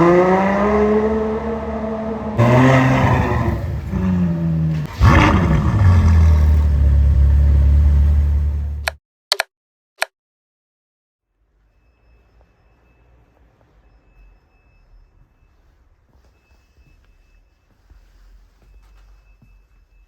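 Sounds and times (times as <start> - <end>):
car engine accelerating hard: 0.0 - 8.9.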